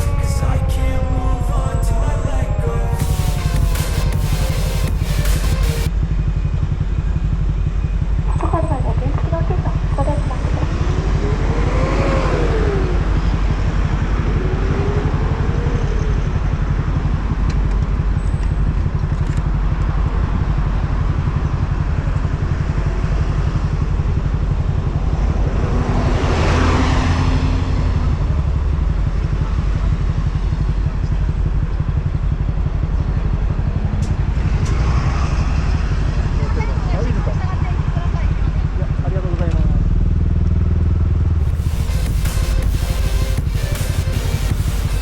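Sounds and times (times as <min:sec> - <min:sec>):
moped engine running: 0:00.0 - 0:45.0.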